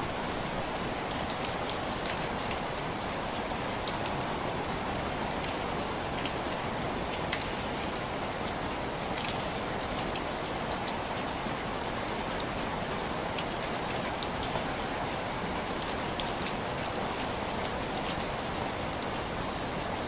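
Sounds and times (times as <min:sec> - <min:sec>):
rain on window glass: 0:00.0 - 0:20.0.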